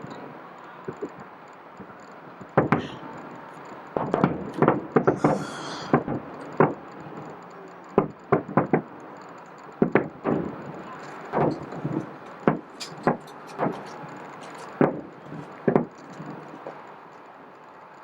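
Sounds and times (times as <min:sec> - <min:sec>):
fireworks bursting: 0:00.0 - 0:17.9
high hiss: 0:05.0 - 0:06.2.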